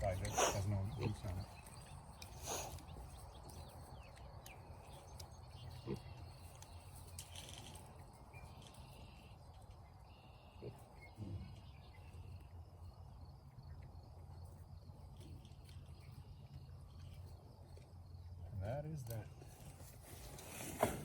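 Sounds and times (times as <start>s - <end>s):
pigs grunting: 0.0s - 1.6s, 5.7s - 6.3s, 10.5s - 11.8s
insects chirping: 0.0s - 21.0s
steady low hum: 0.0s - 21.0s.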